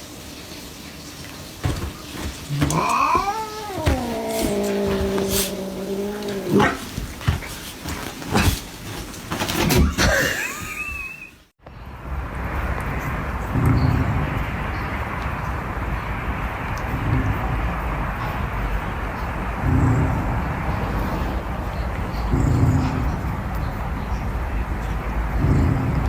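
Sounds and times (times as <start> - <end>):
knocks and scuffles: 1.2 - 10.8
cat yowling: 1.6 - 8.5.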